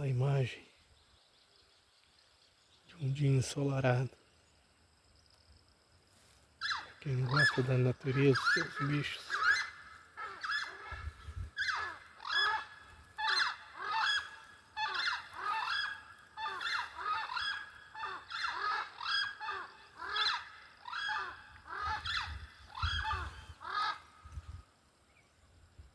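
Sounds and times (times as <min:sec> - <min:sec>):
birds calling: 0:06.6 - 0:25.6.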